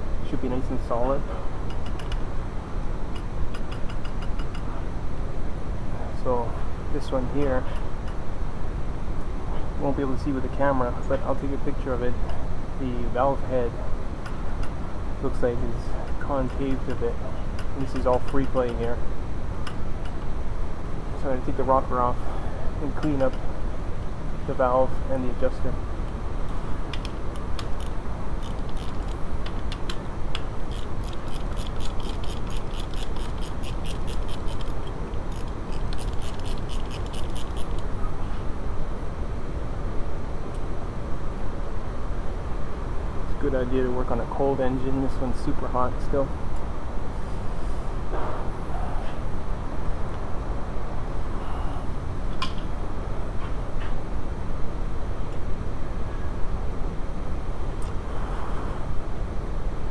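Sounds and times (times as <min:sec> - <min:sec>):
ratchet wrench clicking: 0:27.6 - 0:37.8.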